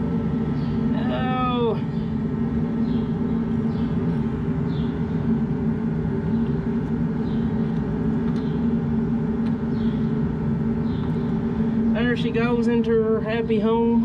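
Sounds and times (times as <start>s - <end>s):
heater humming: 0.0s - 14.0s.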